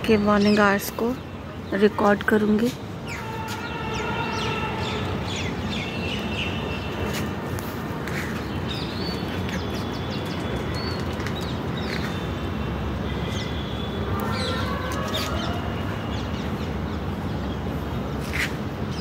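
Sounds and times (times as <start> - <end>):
birds chirping and calling: 0.0 - 7.0, 13.2 - 17.6.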